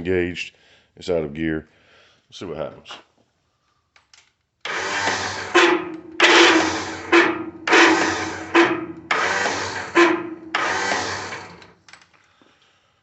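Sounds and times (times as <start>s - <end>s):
starter motor whirring: 4.6s - 11.8s.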